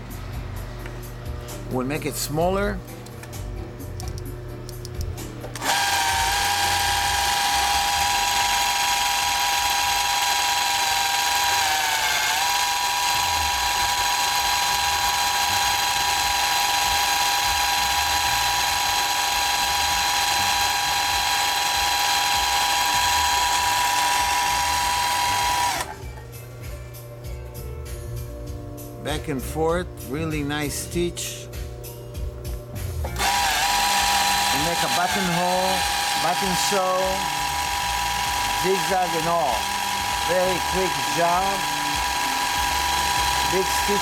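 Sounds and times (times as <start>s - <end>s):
sewing machine running: 5.6s - 26.0s, 33.2s - 44.0s.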